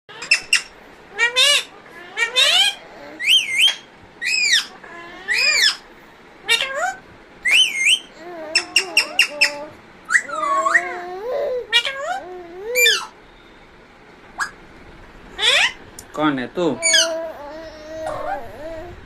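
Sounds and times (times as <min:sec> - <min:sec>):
parrot whistling calls: 0:00.1 - 0:11.0, 0:11.7 - 0:13.2, 0:14.4 - 0:14.6, 0:15.4 - 0:15.8, 0:16.8 - 0:18.9.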